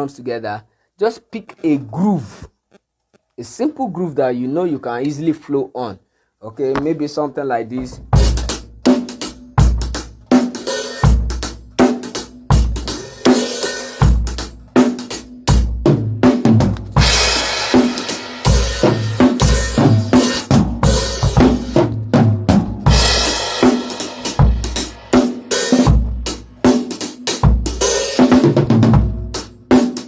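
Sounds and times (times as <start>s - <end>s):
drum kit groove: 7.7s - 30.0s
cymbal crashes: 22.9s - 26.2s.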